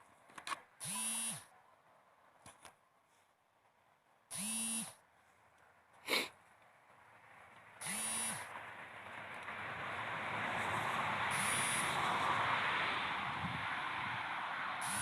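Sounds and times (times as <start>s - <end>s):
electronic buzzing alerts: 0.8s - 1.4s, 4.3s - 5.0s, 7.8s - 8.4s, 11.3s - 11.9s
wind rush: 9.2s - 15.0s.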